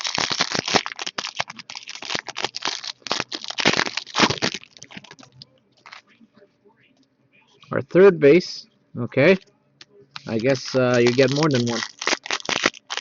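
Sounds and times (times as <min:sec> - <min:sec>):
cards crinkling and rustling: 0:00.0 - 0:06.1, 0:10.2 - 0:13.0.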